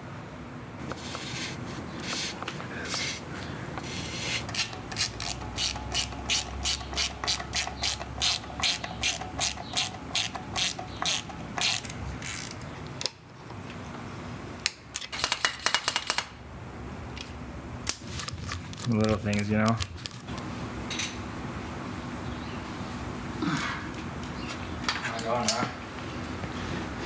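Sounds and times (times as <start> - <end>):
ratchet clicking: 3.9 - 12.6.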